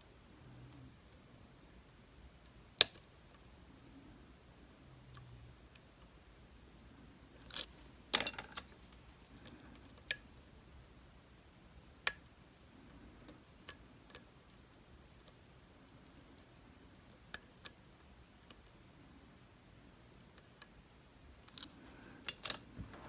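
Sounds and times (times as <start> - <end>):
lock picks clicking in lock: 7.4 - 8.8, 21.5 - 22.7.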